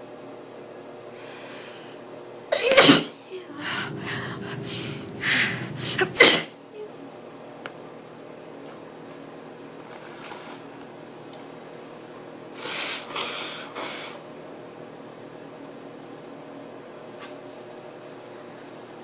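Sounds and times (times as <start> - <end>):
steady background hum: 0.0 - 19.0
person blowing nose: 4.6 - 6.5, 12.6 - 14.2.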